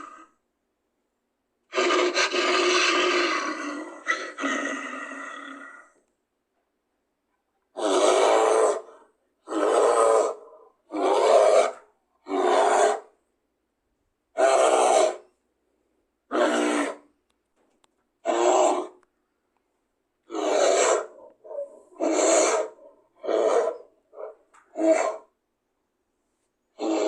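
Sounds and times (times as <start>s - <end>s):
rough animal calls: 1.7s - 6.0s, 16.3s - 17.1s, 18.2s - 19.0s, 20.3s - 25.4s, 26.7s - 27.0s.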